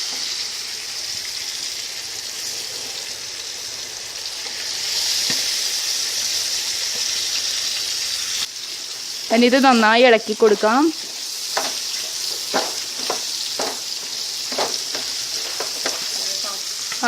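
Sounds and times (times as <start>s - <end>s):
rice sizzling in oil: 0.0s - 17.0s.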